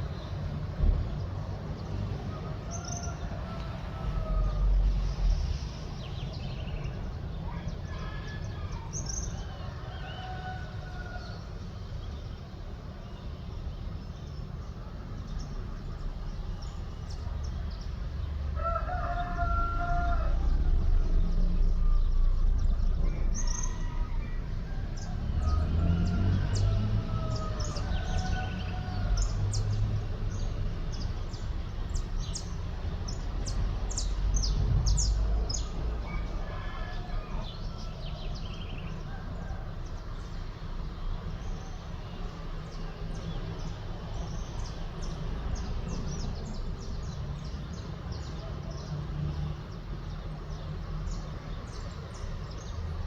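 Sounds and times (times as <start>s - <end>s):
rooster crowing: 2.4s - 5.0s, 7.8s - 11.5s, 18.6s - 29.8s, 35.0s - 40.3s.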